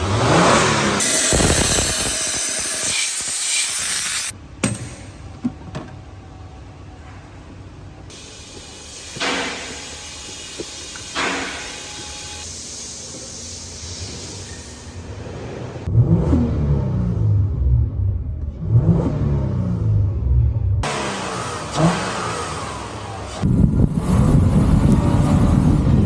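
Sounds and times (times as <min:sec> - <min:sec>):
car engine revving: 0:00.0 - 0:02.8, 0:15.8 - 0:26.0.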